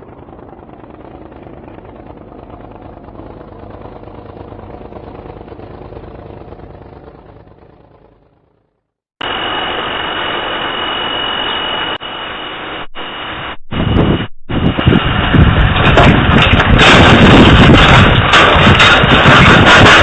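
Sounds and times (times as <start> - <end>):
motorboat engine roaring: 0.0 - 8.8.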